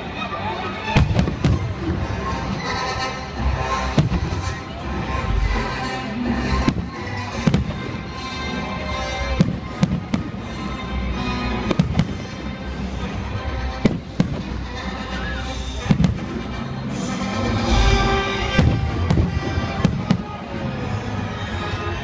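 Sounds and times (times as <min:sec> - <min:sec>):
music playing: 0:00.0 - 0:22.0
fireworks bangs: 0:00.9 - 0:02.9, 0:03.6 - 0:08.1, 0:17.6 - 0:20.4.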